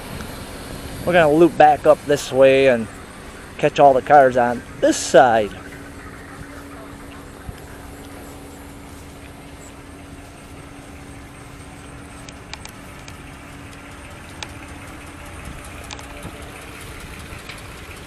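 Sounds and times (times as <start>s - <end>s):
vehicle engine idling: 0.0s - 18.0s
sharp clicks: 7.0s - 18.0s.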